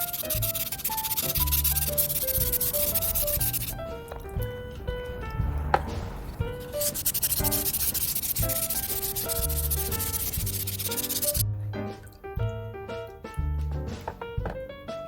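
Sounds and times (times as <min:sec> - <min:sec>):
abrasive scrubbing on rusty steel: 0:00.0 - 0:04.2, 0:05.4 - 0:11.4
background music: 0:00.0 - 0:15.0.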